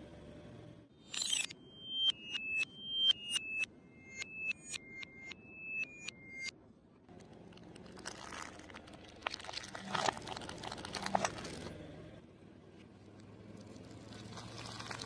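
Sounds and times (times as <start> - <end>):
chewing crispy fried food: 7.1 - 11.8, 13.0 - 15.0.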